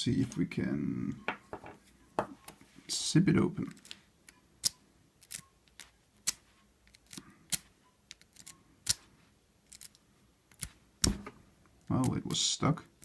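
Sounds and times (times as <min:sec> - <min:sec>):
lock pick clicking in padlock: 0:04.3 - 0:09.0.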